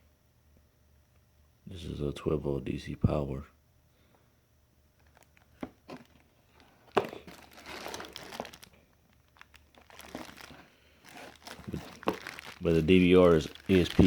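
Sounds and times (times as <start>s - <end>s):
plastic packaging crinkling: 5.0s - 14.0s.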